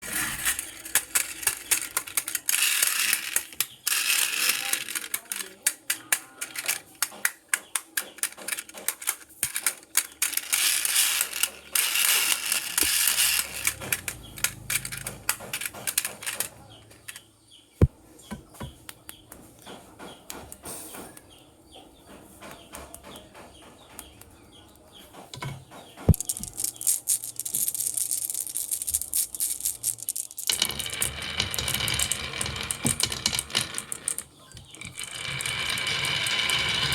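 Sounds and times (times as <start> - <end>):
marbles rolling down a marble run: 0.0 - 5.6, 9.4 - 16.5, 26.1 - 36.9.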